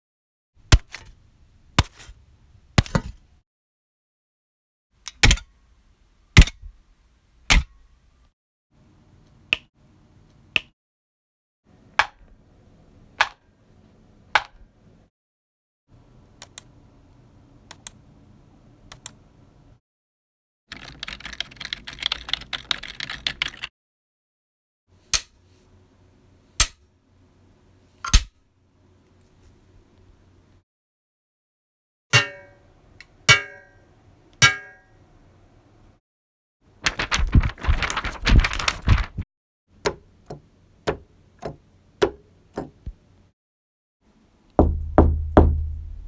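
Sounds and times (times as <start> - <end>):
sharp clicks and knocks: 39.8 - 43.0.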